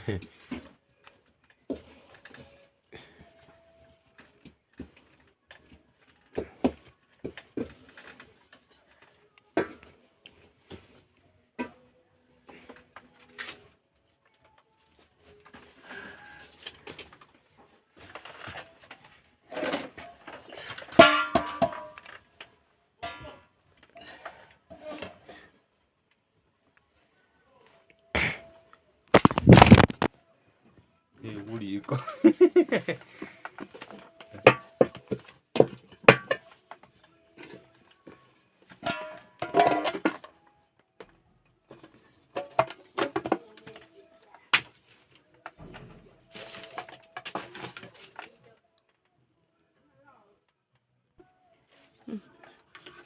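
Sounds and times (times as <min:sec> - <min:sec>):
pots and dishes clattering: 0:19.5 - 0:22.2, 0:32.3 - 0:36.6, 0:38.7 - 0:40.3, 0:41.7 - 0:43.8.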